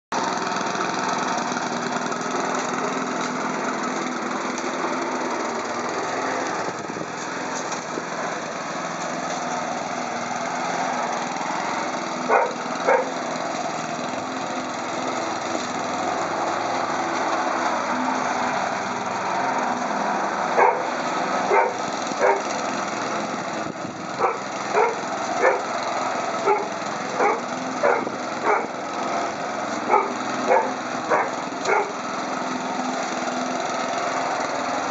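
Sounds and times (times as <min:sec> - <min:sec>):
engine drone: 0:00.1 - 0:34.9
puppy barking: 0:12.3 - 0:13.2, 0:20.6 - 0:22.5, 0:24.2 - 0:25.7, 0:26.4 - 0:28.8, 0:29.9 - 0:32.0.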